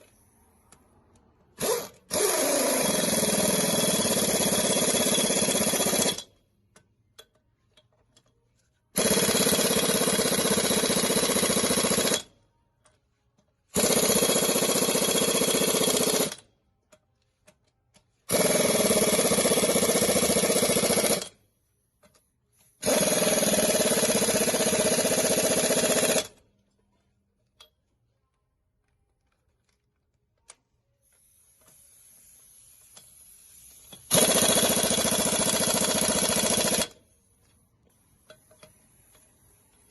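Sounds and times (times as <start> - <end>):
impact wrench bursts: 1.5 - 6.4, 8.9 - 12.4, 13.7 - 16.5, 18.2 - 21.6, 22.5 - 26.4, 31.0 - 37.3.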